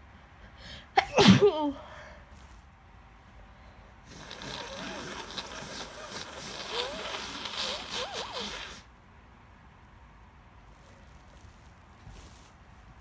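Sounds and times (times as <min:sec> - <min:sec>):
person blowing nose: 0:04.1 - 0:08.9.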